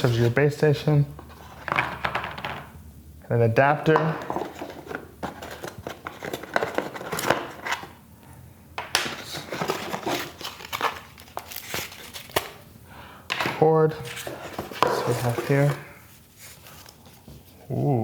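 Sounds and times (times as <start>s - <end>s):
packaging rustling: 4.2s - 8.0s, 8.9s - 12.7s, 13.3s - 17.5s.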